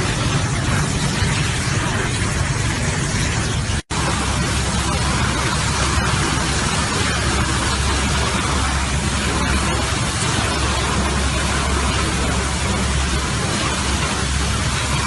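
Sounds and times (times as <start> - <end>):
heavy machinery droning: 0.0 - 15.0.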